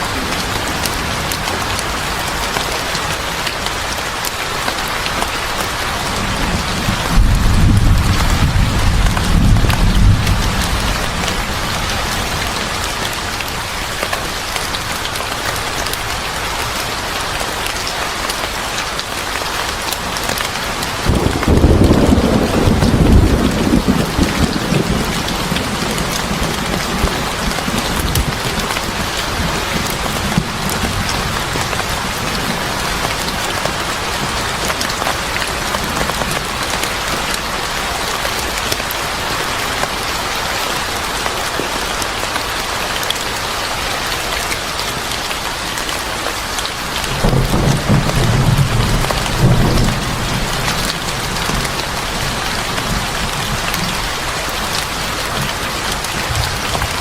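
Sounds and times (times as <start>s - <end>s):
steady rain: 0.0s - 57.0s
thunder rumbling: 6.0s - 12.8s, 21.0s - 33.7s, 47.0s - 57.0s.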